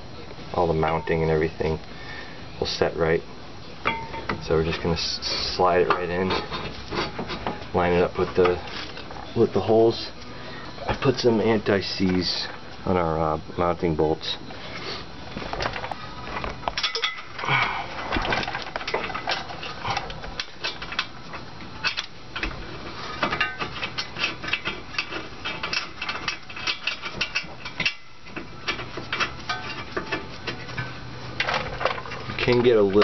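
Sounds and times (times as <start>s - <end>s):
metal clinks and rattles: 16.8s - 33.0s.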